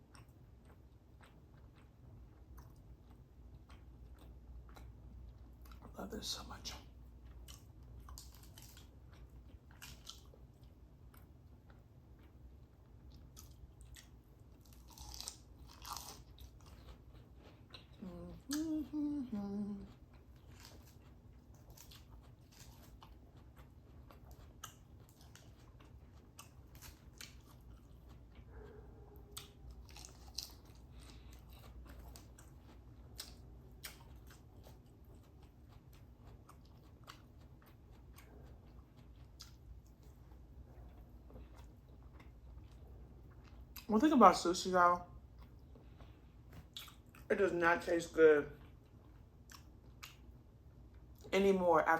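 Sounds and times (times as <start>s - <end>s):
chewing with wet mouth clicks: 0.0s - 6.0s, 7.1s - 19.0s, 19.8s - 43.9s, 45.3s - 47.3s, 48.6s - 51.3s
person humming: 18.0s - 19.9s.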